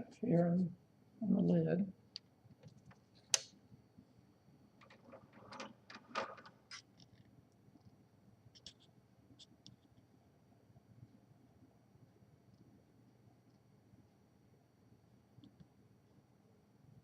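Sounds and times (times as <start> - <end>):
typewriter click: 4.8 - 6.6.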